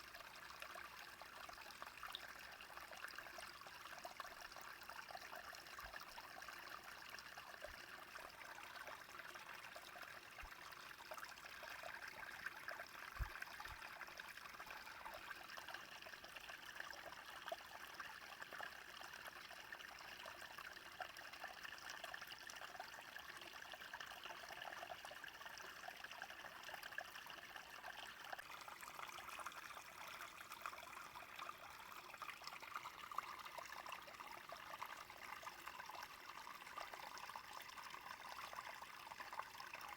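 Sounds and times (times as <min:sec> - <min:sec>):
brook babbling: 0:00.0 - 0:39.9.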